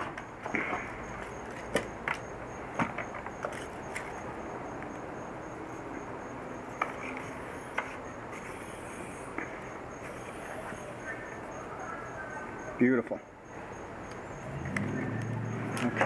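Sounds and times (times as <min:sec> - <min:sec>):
air pump hissing: 0:06.9 - 0:11.0.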